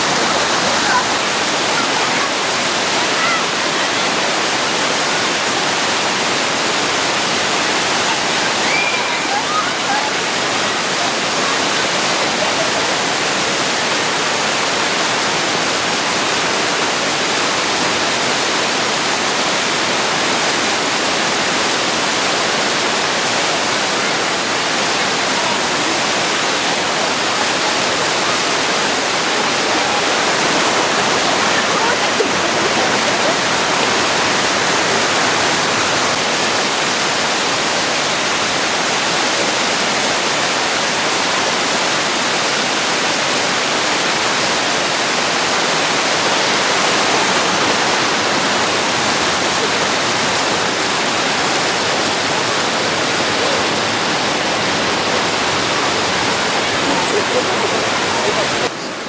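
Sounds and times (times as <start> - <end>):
faint voices: 0.0 - 5.6, 7.4 - 13.9, 23.4 - 37.5, 45.6 - 59.0
waterfall rushing: 0.0 - 59.0.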